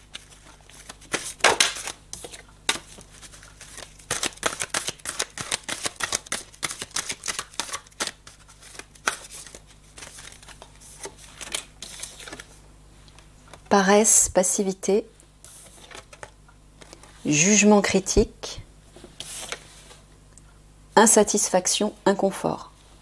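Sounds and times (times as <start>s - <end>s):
cards being shuffled: 0.0s - 12.6s, 15.5s - 17.1s, 19.1s - 19.7s.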